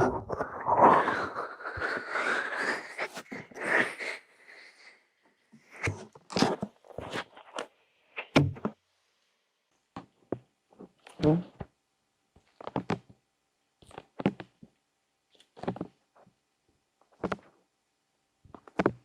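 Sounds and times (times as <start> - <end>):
fingers rubbing on microphone: 0.0 - 3.9.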